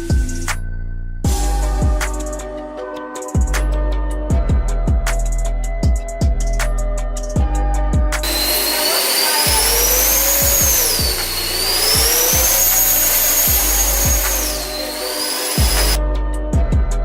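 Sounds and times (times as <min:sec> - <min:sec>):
background music with a beat: 0:00.0 - 0:17.0
model aircraft motor whining: 0:08.2 - 0:16.0.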